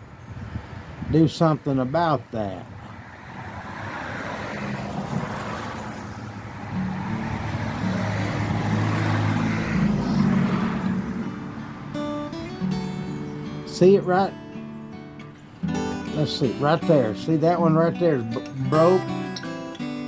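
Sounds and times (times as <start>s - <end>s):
low engine hum: 3.4s - 13.0s.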